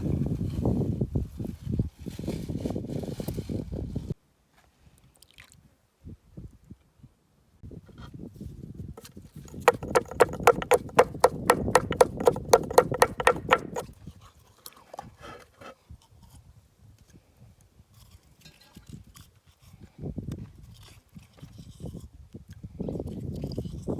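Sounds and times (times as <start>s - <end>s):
knife chopping on cutting board: 9.5s - 13.8s.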